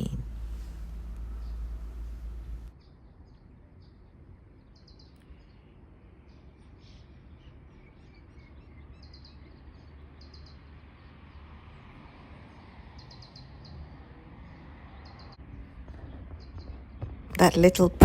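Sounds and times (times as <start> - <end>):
low outdoor rumble: 0.0 - 2.7
small birds chirping: 0.3 - 11.3.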